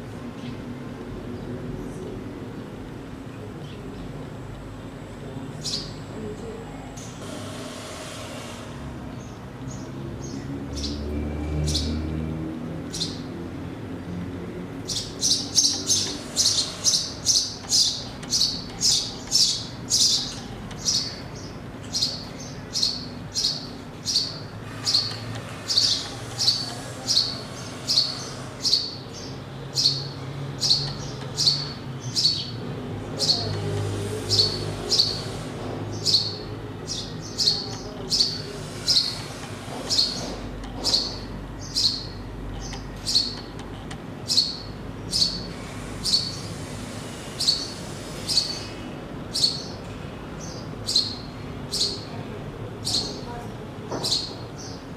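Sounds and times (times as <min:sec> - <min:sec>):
small bird chirping: 0:14.8 - 0:43.6, 0:44.2 - 0:46.6, 0:47.4 - 0:49.8, 0:50.4 - 0:52.1.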